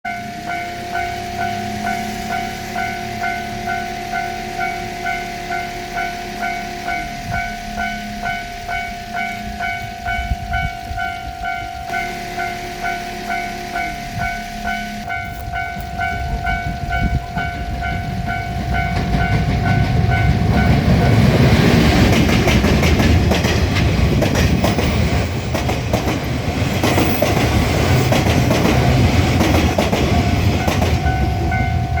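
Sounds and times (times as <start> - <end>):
level crossing electronic bell: 0.1 - 21.2, 30.2 - 32.0
train passing rumble: 0.1 - 32.0
wheels clattering over rail joints: 8.2 - 32.0.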